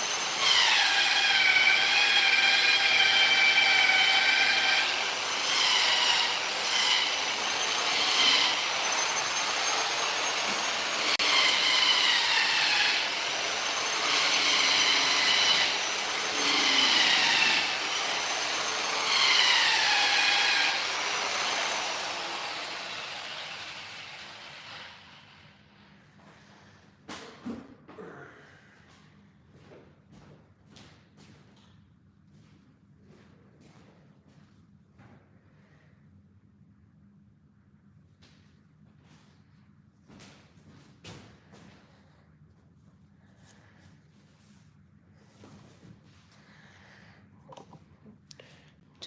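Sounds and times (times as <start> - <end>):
electric polisher whining: 0.0 - 25.4.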